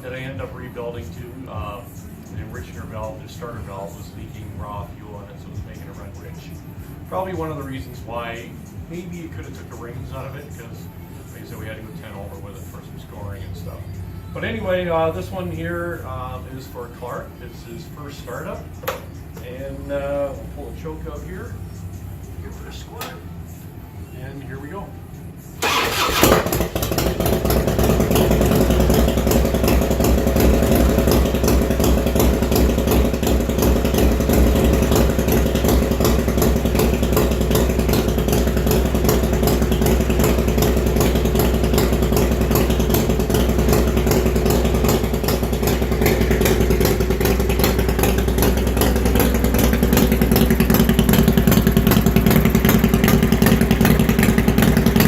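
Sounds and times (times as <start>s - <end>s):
motorcycle engine idling: 25.6s - 55.0s.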